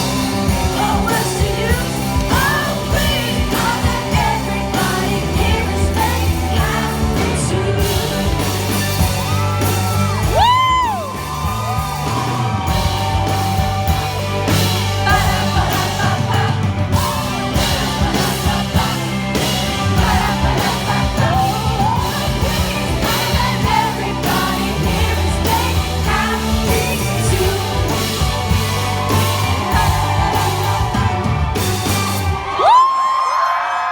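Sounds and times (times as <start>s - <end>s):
person singing: 0.0s - 9.5s, 14.5s - 31.8s
drum beat: 0.0s - 32.8s
bass and guitars: 0.0s - 33.9s.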